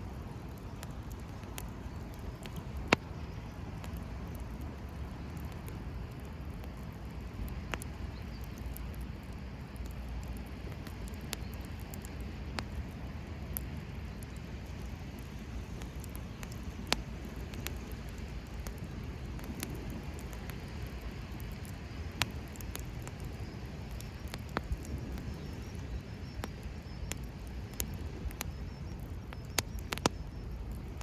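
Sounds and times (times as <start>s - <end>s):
burning wood popping: 0.0s - 31.0s
campfire crackling: 0.0s - 31.0s.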